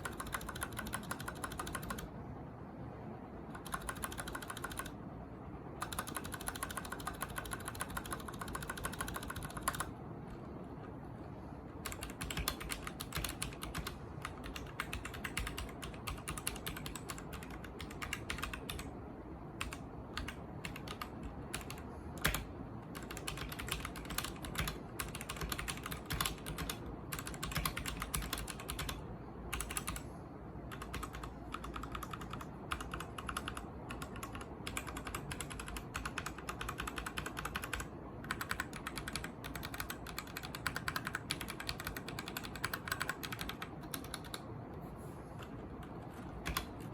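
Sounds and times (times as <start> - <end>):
mechanical keyboard typing: 0.0 - 2.1, 3.5 - 5.0, 5.8 - 10.4, 11.8 - 44.5, 45.4 - 46.9.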